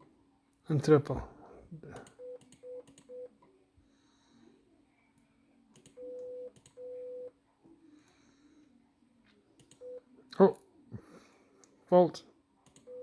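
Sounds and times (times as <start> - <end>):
morse code beeps: 6.0 - 7.3.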